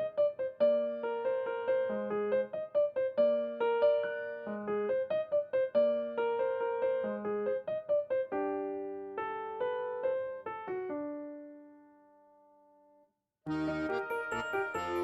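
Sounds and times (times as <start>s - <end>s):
electric piano melody: 0.0s - 12.6s, 13.5s - 15.0s
bright tinkling music: 13.7s - 15.0s.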